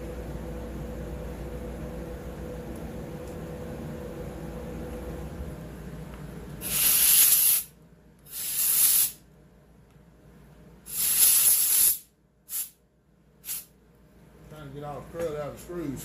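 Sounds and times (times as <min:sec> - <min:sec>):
compressed air hissing bursts: 0:06.6 - 0:07.7, 0:08.3 - 0:09.2, 0:10.9 - 0:12.8, 0:13.4 - 0:13.7.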